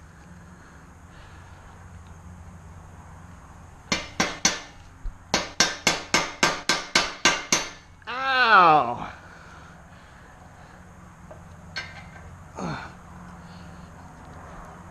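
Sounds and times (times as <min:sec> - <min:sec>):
hammer blows ringing: 0:03.9 - 0:07.9.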